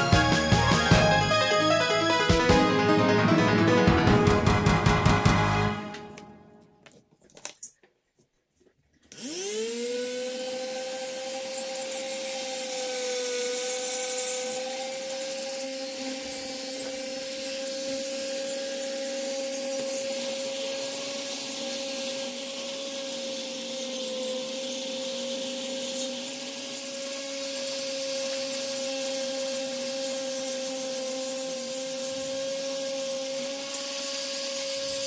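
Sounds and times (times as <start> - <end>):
power tool whining: 9.1 - 35.0.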